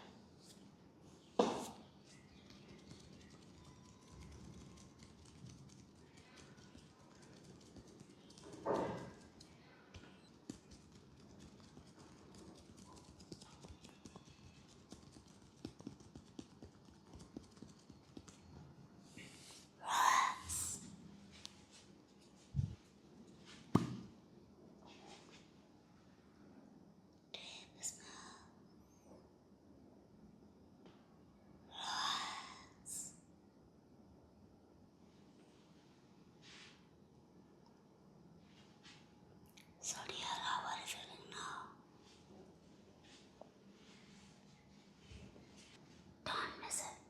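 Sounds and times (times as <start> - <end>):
hands tapping on skin: 2.5 - 18.5.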